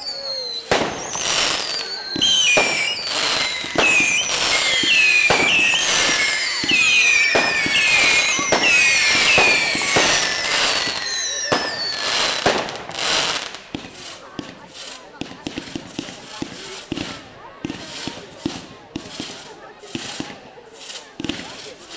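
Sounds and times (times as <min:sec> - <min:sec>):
fireworks whistles falling: 0:00.0 - 0:21.6
fireworks bangs: 0:00.0 - 0:21.9.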